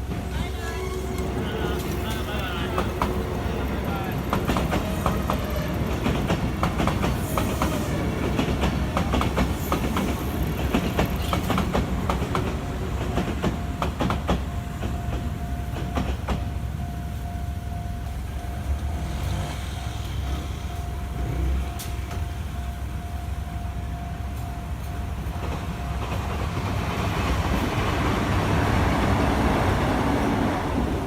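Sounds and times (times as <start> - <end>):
train wheels clacking over rail joints: 1.1 - 16.5.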